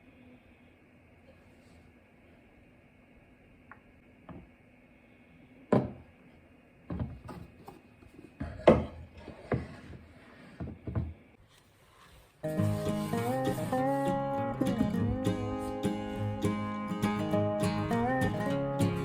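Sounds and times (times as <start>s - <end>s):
wooden knocks and clunks: 5.7s - 6.0s, 8.4s - 11.2s.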